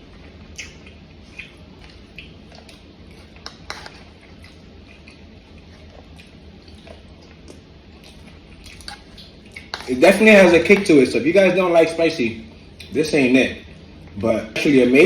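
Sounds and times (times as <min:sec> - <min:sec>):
person chewing food: 0:00.0 - 0:10.0
faint low hum: 0:00.0 - 0:15.0
wet mouth clicks and smacks: 0:00.6 - 0:02.8.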